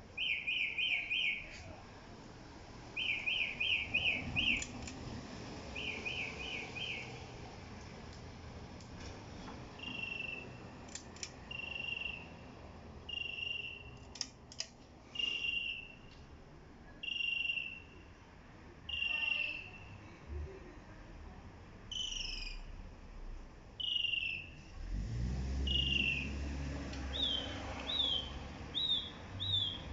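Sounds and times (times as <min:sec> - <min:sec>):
bird calling: 0:00.2 - 0:01.6, 0:03.0 - 0:04.7, 0:05.8 - 0:07.1, 0:09.8 - 0:10.6, 0:11.5 - 0:12.4, 0:13.1 - 0:14.0, 0:15.1 - 0:16.1, 0:23.8 - 0:24.6, 0:25.7 - 0:26.3, 0:27.1 - 0:29.9.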